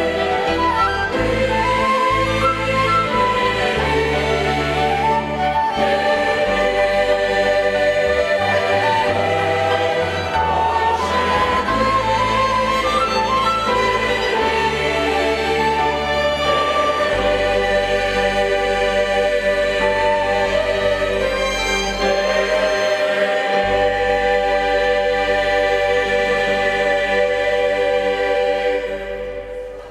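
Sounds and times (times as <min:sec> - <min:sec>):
choir singing a hymn: 0:00.0 - 0:29.9
violin ensemble: 0:00.0 - 0:29.9.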